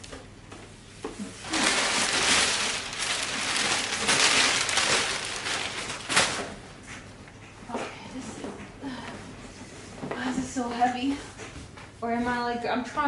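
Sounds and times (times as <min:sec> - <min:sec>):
packaging rustling and scraping: 0:01.2 - 0:07.1.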